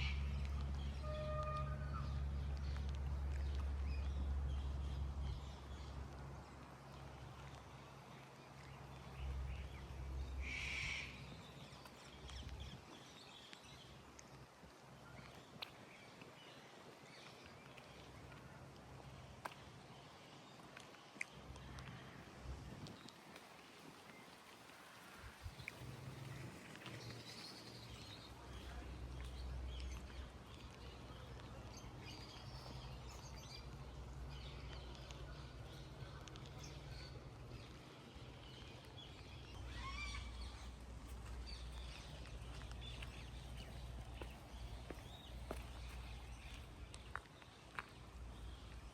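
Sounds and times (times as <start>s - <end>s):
birds calling: 0.0s - 2.8s, 9.5s - 13.1s
low steady rumble: 0.0s - 15.4s, 25.2s - 48.9s
birds chirping: 24.1s - 48.9s.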